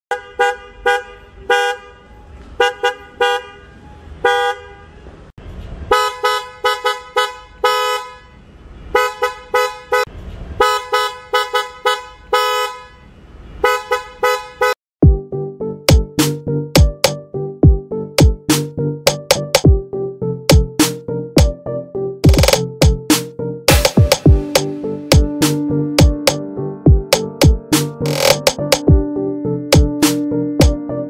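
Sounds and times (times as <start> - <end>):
electric car horns honking: 0.1 - 5.0, 5.9 - 14.8.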